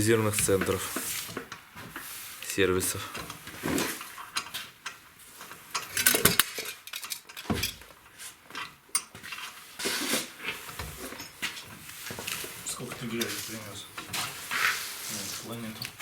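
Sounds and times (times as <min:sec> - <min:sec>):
metal tools clinking and scraping: 0:02.4 - 0:16.0.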